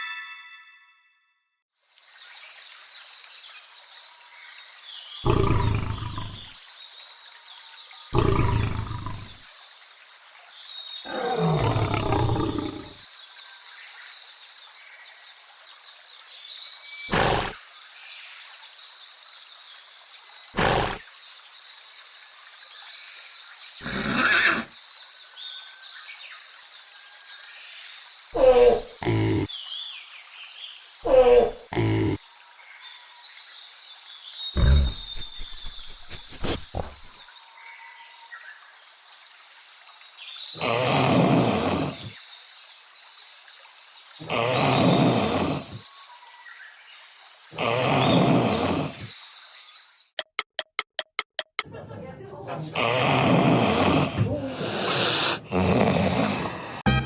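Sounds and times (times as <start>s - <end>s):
animal-like roars and growls: 5.3s - 6.5s, 8.2s - 9.4s, 11.1s - 13.0s, 34.6s - 35.8s
man snoring loudly: 5.3s - 6.5s, 11.1s - 12.9s, 28.4s - 29.5s, 31.1s - 32.2s, 34.6s - 37.2s, 44.3s - 45.8s, 47.6s - 49.1s, 52.8s - 57.0s.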